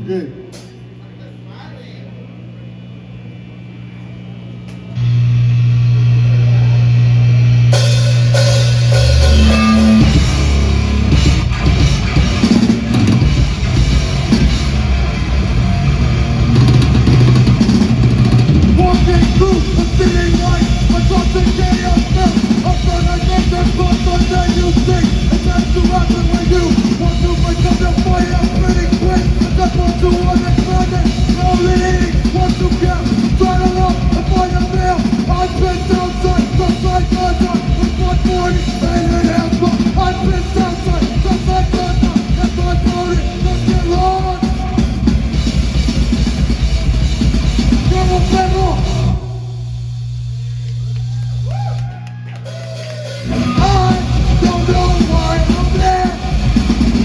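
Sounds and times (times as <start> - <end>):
punk band playing live: 5.0 - 51.4, 52.8 - 57.0.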